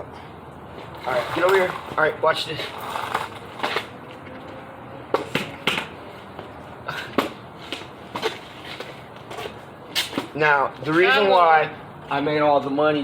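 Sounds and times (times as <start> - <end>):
skateboard clattering on ground: 1.0 - 3.9.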